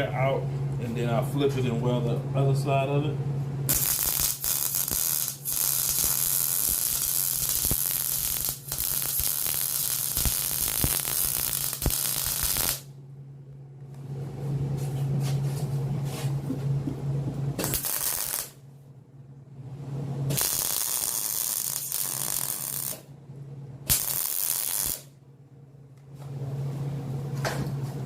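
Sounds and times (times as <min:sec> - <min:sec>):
welding machine hum: 0:03.6 - 0:13.0, 0:16.2 - 0:18.6, 0:19.9 - 0:23.1, 0:23.8 - 0:25.2
arc welding crackling hiss: 0:03.7 - 0:12.9, 0:17.6 - 0:18.6, 0:20.3 - 0:23.0, 0:23.9 - 0:25.1.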